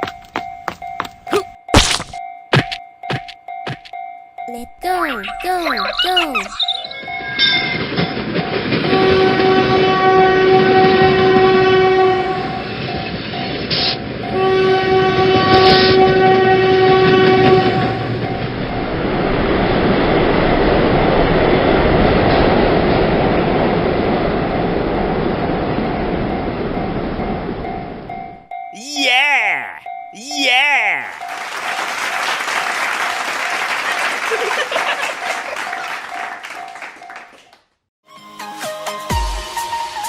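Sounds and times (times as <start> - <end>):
level crossing alarm ringing: 0.0 - 8.0
train rumble and rail clatter: 7.1 - 28.4
train horn blasts: 8.8 - 12.8, 14.2 - 18.2.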